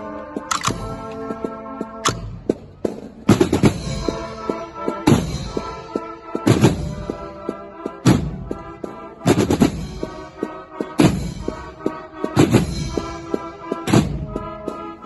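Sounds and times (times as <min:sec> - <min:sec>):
percussion ensemble playing: 0:00.0 - 0:15.0
heavy drum strikes: 0:08.0 - 0:08.6, 0:13.8 - 0:14.5.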